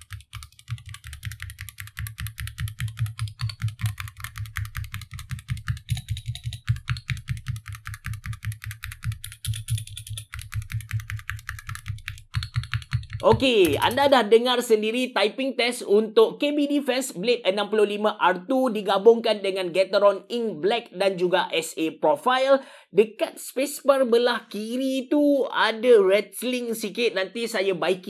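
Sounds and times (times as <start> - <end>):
mechanical keyboard typing: 0.0 - 14.3.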